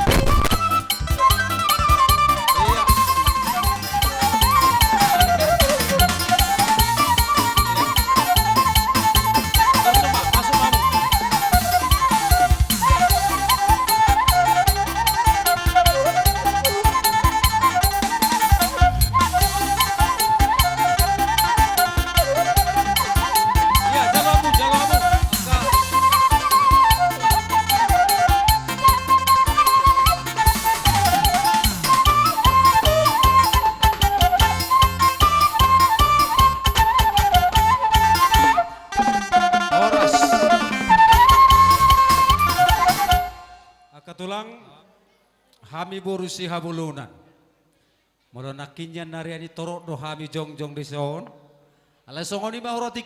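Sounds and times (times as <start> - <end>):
repeating bass line: 0.0 - 1.6
quick drum beat: 0.0 - 38.5
wind instrument melody: 0.0 - 43.9.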